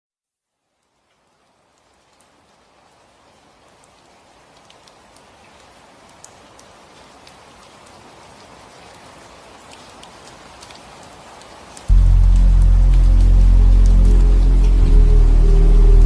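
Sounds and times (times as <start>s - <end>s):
steady rain: 0.4s - 16.0s.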